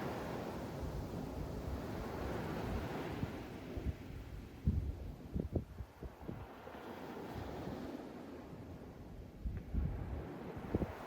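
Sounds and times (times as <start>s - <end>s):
wind buffeting microphone: 0.0s - 6.6s, 9.4s - 11.0s
faint ocean surf: 0.0s - 11.0s.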